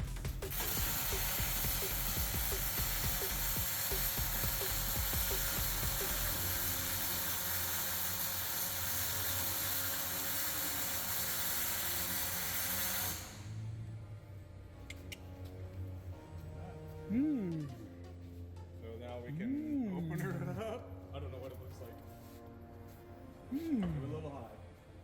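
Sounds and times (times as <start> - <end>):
welding arc hissing: 0.0 - 13.7.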